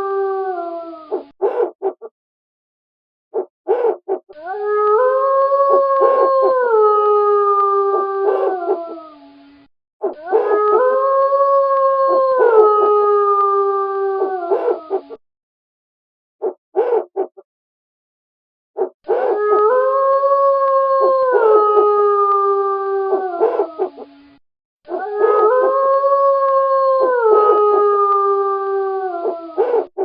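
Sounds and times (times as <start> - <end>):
wolf howling: 0.0 - 2.0, 3.4 - 9.4, 10.0 - 15.2, 18.8 - 24.1, 24.9 - 30.0.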